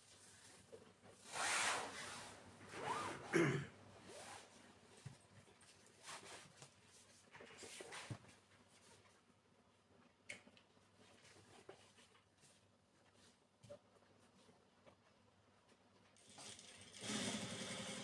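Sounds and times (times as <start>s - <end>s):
cloth rustling: 1.3s - 3.3s.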